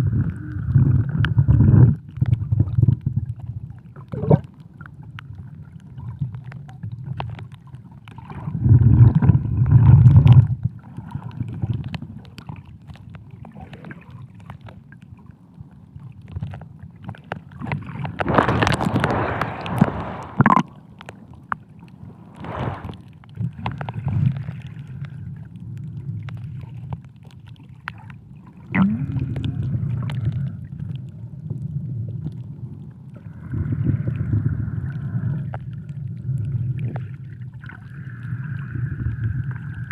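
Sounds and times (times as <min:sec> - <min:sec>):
gurgling water: 0:00.0 - 0:39.9
muffled underwater rumble: 0:00.0 - 0:39.9
rushing water burst: 0:18.1 - 0:20.8, 0:22.0 - 0:23.2.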